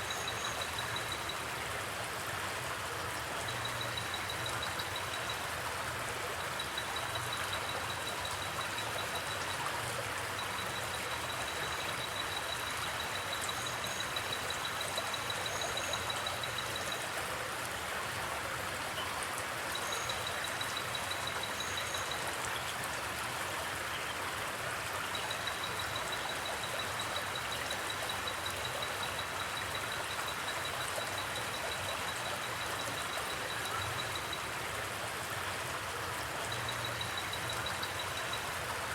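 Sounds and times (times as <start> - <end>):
river water rushing: 0.0 - 38.9
cricket trilling: 10.4 - 17.0.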